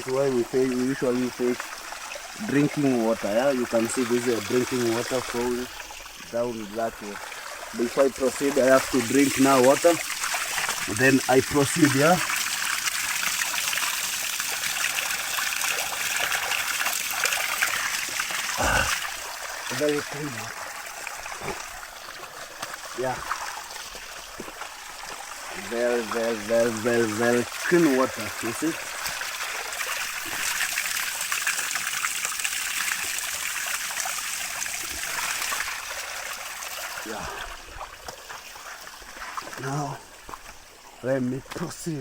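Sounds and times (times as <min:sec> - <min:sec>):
stream trickling over stones: 0:00.0 - 0:42.0
tiny water splashes: 0:00.0 - 0:42.0.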